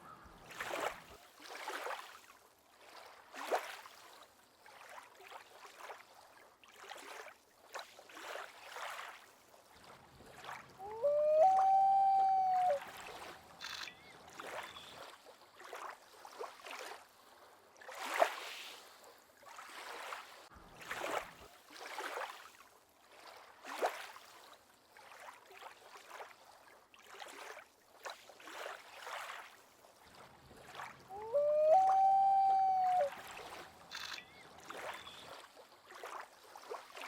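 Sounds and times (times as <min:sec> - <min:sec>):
water splashing and lapping: 0:00.0 - 0:37.0
long rising call: 0:10.8 - 0:12.9, 0:31.1 - 0:33.4.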